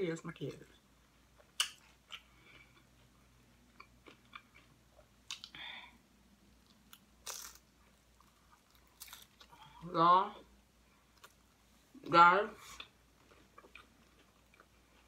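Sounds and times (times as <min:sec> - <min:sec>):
chewing crunchy chips: 0:06.6 - 0:09.6.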